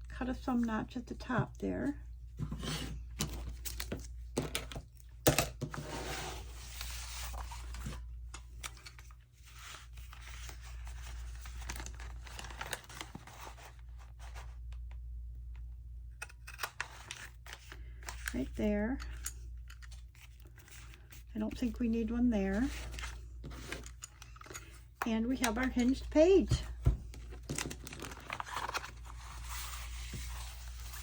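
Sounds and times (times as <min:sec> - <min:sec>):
paper handling: 0:06.4 - 0:14.8, 0:25.4 - 0:31.0.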